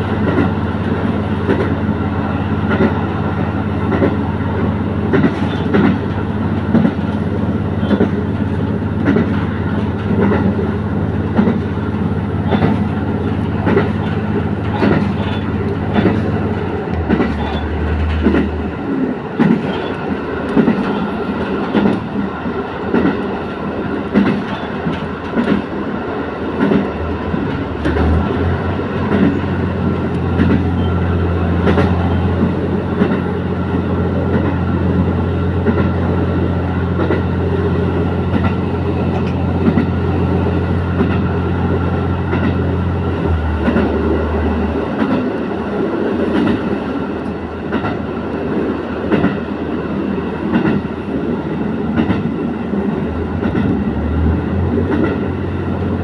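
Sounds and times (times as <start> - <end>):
railcar engine drone: 0.0 - 56.0
wheels clacking over rail joints: 3.9 - 22.2, 26.6 - 34.6, 36.9 - 45.4, 50.4 - 50.9, 53.0 - 56.0.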